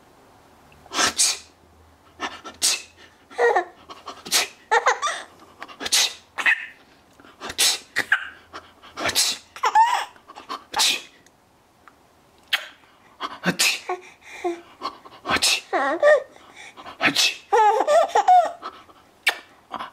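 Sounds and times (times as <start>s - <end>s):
man fake sneezing: 0.9s - 1.6s, 2.4s - 3.0s, 4.2s - 4.6s, 5.8s - 6.6s, 7.4s - 8.3s, 9.0s - 9.5s, 10.7s - 11.2s, 12.5s - 12.8s, 13.4s - 14.0s, 15.3s - 15.8s, 17.0s - 17.5s
baby squealing laugh: 3.3s - 3.8s, 4.7s - 5.3s, 6.4s - 6.8s, 8.0s - 8.4s, 9.6s - 10.2s, 15.6s - 16.3s, 17.4s - 18.6s.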